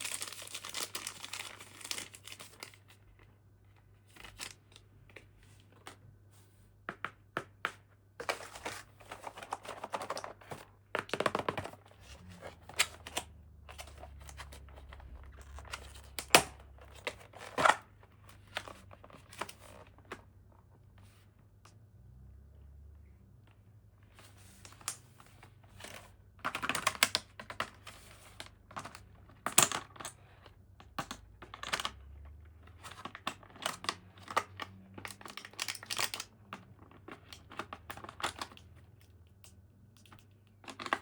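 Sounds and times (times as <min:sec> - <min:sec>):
packaging crinkling and tearing: 0:00.0 - 0:03.0, 0:04.1 - 0:04.7, 0:33.1 - 0:36.3.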